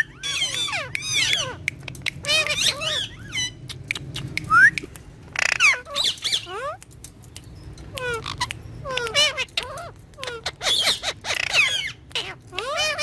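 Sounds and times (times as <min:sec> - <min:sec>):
parakeet harsh squawk: 0:00.0 - 0:01.6, 0:02.2 - 0:03.6, 0:05.3 - 0:06.8, 0:08.0 - 0:13.0
parakeet chattering: 0:00.0 - 0:04.5, 0:05.3 - 0:06.8, 0:07.8 - 0:13.0.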